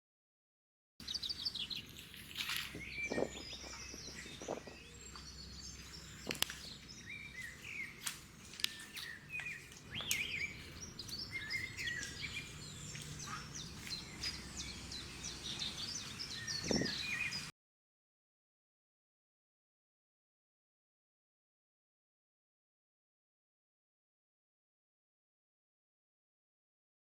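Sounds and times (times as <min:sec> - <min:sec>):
small birds chirping: 0:01.0 - 0:17.5.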